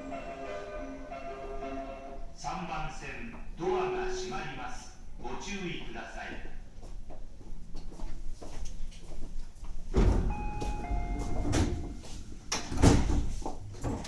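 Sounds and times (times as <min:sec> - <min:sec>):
doors shutting with a thud: 0:09.9 - 0:14.0
train doors sliding shut: 0:09.9 - 0:14.0
two-note door chime: 0:10.3 - 0:12.0.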